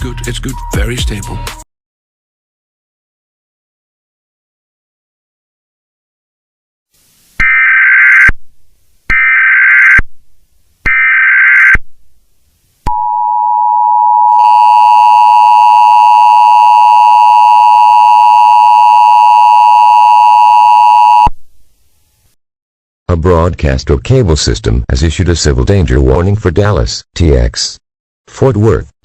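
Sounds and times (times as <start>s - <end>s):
steady attention tone: 12.8s - 21.3s
data tone bursts: 12.9s - 21.3s.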